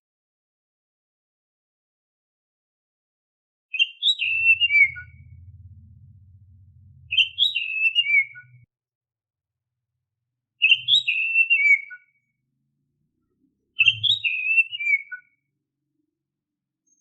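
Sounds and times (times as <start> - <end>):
bird singing whistled phrase: 3.7 - 5.8, 7.0 - 8.7, 10.6 - 12.2, 13.8 - 15.4.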